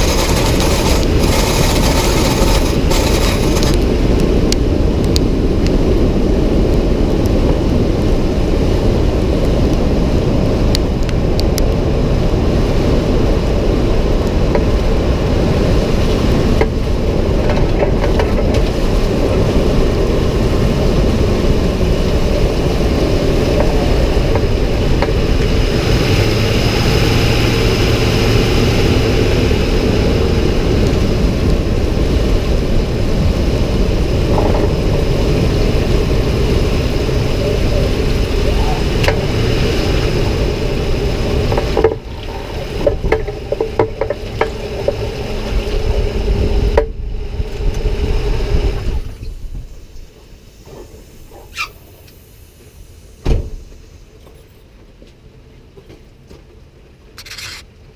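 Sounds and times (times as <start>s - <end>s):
low hum: 0.0s - 54.2s
truck engine and road noise: 0.0s - 57.9s
high hiss: 49.4s - 54.1s.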